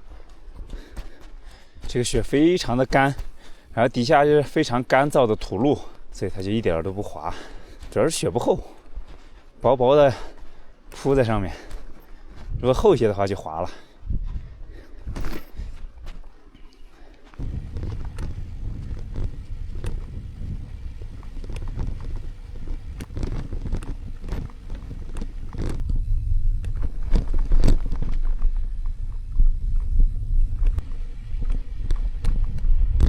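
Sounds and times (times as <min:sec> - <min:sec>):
wind buffeting microphone: 0:14.0 - 0:16.2, 0:17.4 - 0:33.0
bicycle knocks and rattles: 0:17.4 - 0:33.0.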